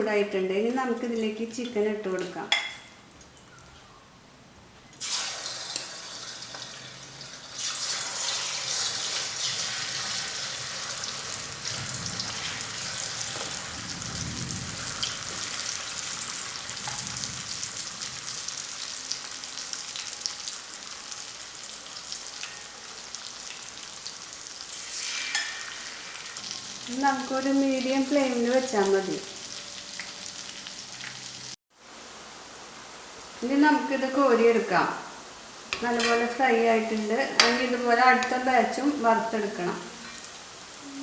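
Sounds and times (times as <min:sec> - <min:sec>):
chicken deep-frying in oil: 0:05.0 - 0:33.5.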